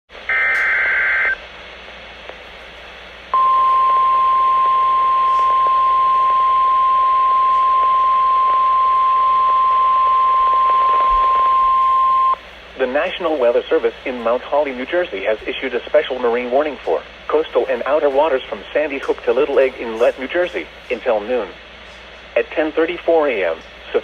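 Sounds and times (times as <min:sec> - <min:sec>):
radio static hiss: 0:00.2 - 0:24.0
steady warning alarm tone: 0:03.4 - 0:12.4.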